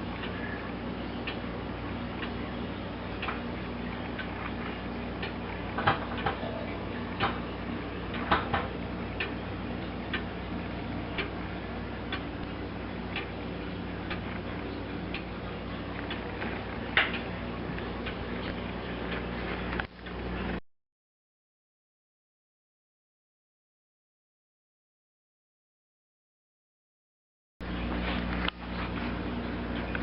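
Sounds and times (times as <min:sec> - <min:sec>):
clock ticking: 0:01.2 - 0:19.9.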